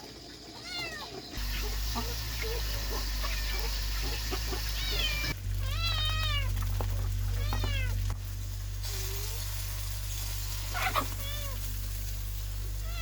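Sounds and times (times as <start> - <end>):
kitten meowing: 4.8 - 6.5, 7.3 - 8.0, 10.8 - 11.6.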